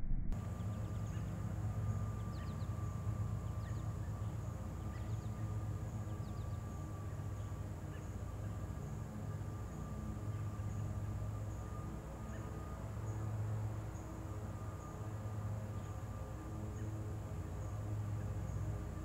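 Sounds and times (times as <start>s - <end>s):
steady low hum: 0.0s - 19.0s
small birds chirping: 0.4s - 9.0s.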